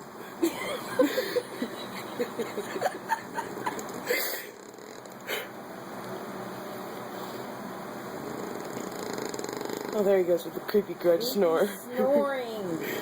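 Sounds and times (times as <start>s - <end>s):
short snort: 8.3s - 10.0s
man snoring: 8.3s - 10.1s.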